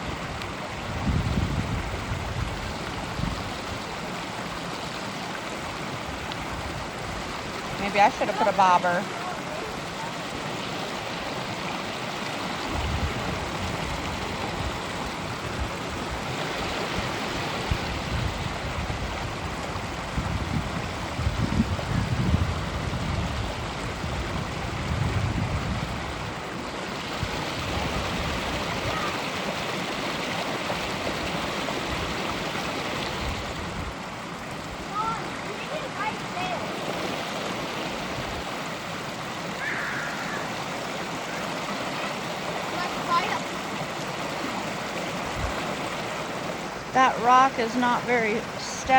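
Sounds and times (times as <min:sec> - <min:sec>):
creek water babbling: 0:00.0 - 0:48.9.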